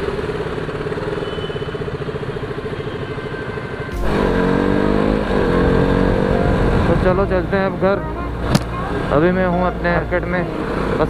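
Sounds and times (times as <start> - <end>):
motorcycle engine accelerating: 0.0 - 11.0
wind rumble: 3.9 - 11.0.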